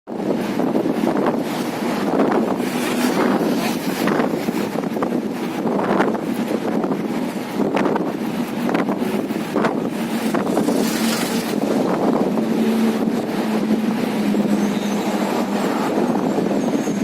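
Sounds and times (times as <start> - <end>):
wind on microphone: 0.1 - 17.0.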